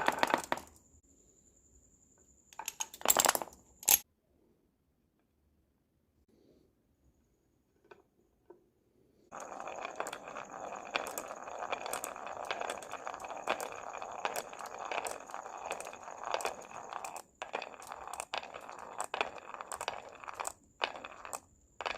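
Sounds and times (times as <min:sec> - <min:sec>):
marbles clicking: 0:00.0 - 0:00.8, 0:09.3 - 0:21.9
marbles rolling on wooden track: 0:00.0 - 0:00.8, 0:02.6 - 0:04.0, 0:09.3 - 0:21.9.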